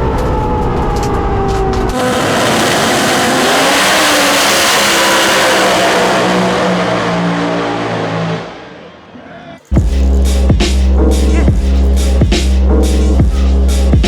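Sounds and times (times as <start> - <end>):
drag car engine at full throttle: 1.0 - 9.1.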